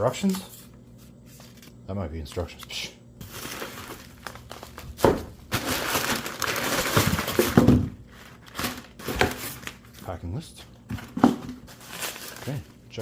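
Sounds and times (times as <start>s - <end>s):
paper crinkling: 0.2s - 1.9s, 3.2s - 10.1s, 11.7s - 12.8s.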